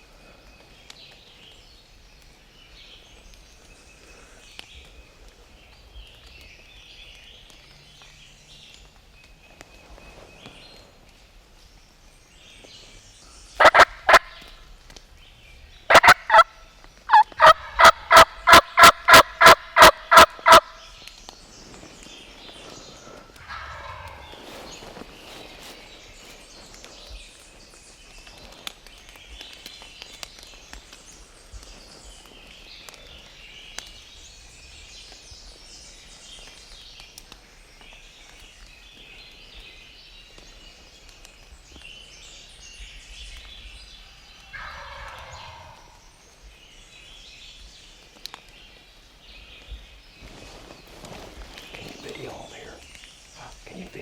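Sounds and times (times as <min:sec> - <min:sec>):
songbirds chirping: 0:00.0 - 0:54.0
turkey gobbling: 0:13.6 - 0:14.5, 0:15.9 - 0:20.8, 0:23.4 - 0:24.4, 0:44.6 - 0:45.8.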